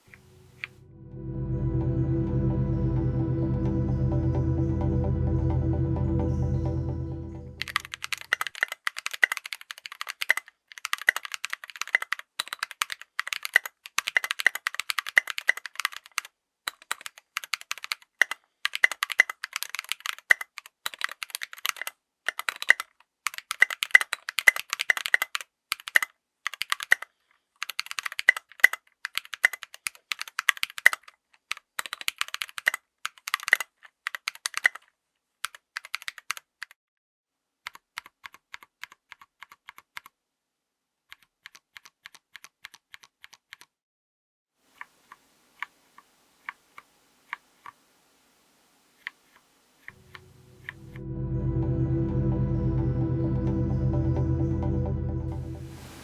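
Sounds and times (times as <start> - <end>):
mechanical keyboard typing: 7.6 - 36.8, 37.7 - 40.2, 41.1 - 43.8.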